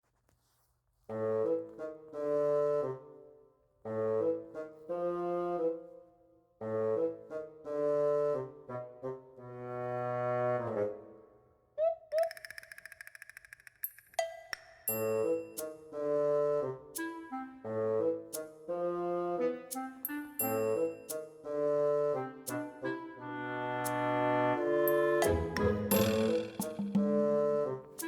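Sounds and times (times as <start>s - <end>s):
comic brass tune: 15.2s - 28.0s
light plucked notes: 24.9s - 27.5s.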